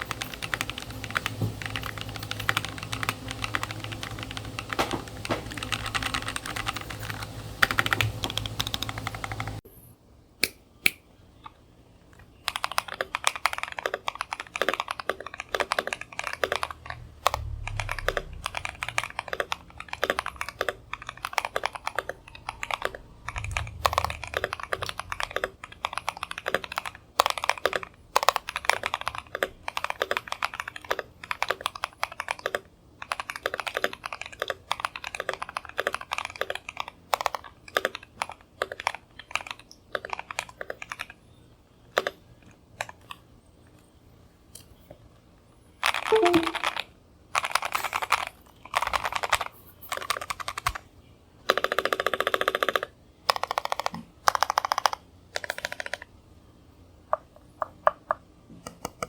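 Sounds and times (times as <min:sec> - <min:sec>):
mechanical keyboard typing: 0:00.0 - 0:09.6, 0:12.4 - 0:41.2, 0:45.9 - 0:46.8, 0:47.4 - 0:50.8, 0:51.5 - 0:56.1.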